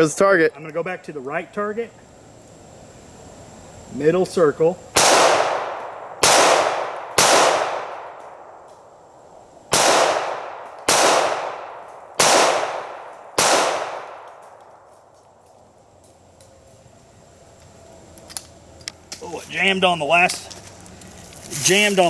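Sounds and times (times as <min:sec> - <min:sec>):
pistol shots with echo: 0:05.0 - 0:08.4, 0:09.7 - 0:14.5.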